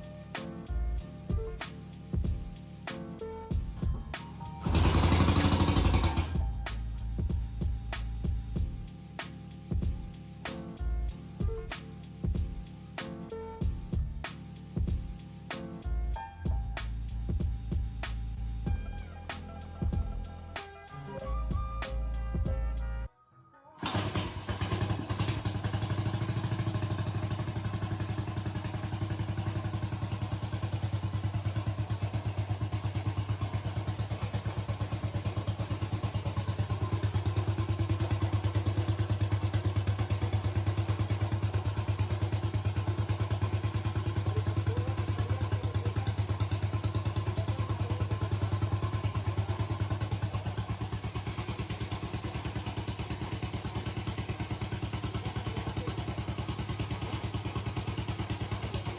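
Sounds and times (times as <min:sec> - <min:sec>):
motorcycle engine idling: 0:00.0 - 0:20.6, 0:23.9 - 0:58.9.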